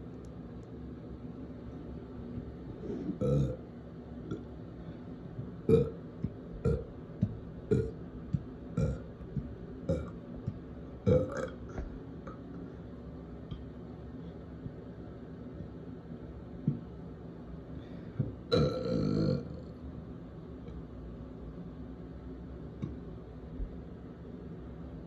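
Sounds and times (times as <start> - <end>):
person burping: 2.9 - 3.6, 5.7 - 6.0, 6.6 - 6.9, 7.7 - 8.0, 8.8 - 9.1, 9.9 - 10.2, 11.0 - 12.4, 18.2 - 19.6.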